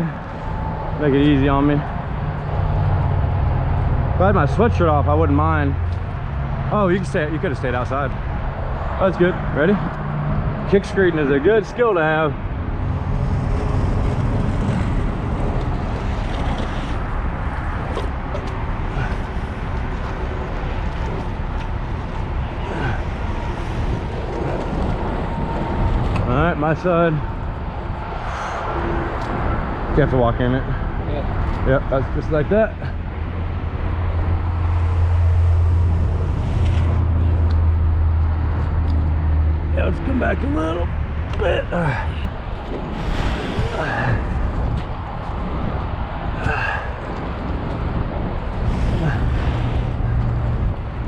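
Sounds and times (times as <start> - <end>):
even rushing noise: 10.5 - 30.0, 41.8 - 51.0.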